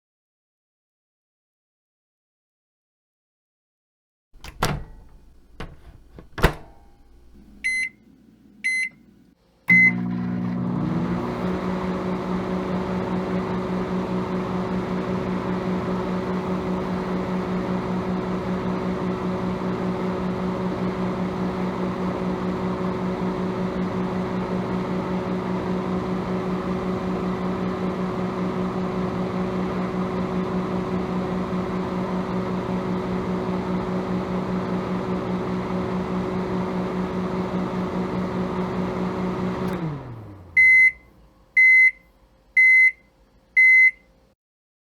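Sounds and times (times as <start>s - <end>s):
microwave door clicking: 4.4s - 7.9s
microwave oven humming: 4.4s - 44.1s
keypad beeps: 7.6s - 8.0s, 8.7s - 9.0s, 43.6s - 44.0s.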